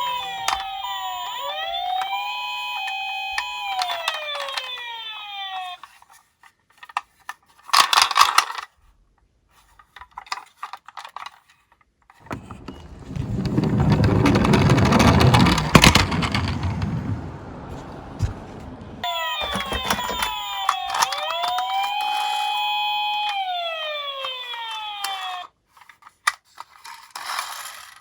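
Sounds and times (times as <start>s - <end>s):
clicks: 0.0s - 5.7s, 12.2s - 25.5s
toy car rolling rumble: 0.0s - 6.1s, 12.2s - 28.0s
toy electronic siren: 0.0s - 6.1s, 12.3s - 16.8s, 19.0s - 25.6s
metallic clatter of toy cars: 1.9s - 4.9s, 5.7s - 8.9s, 9.5s - 17.4s, 19.3s - 23.4s, 24.1s - 28.0s.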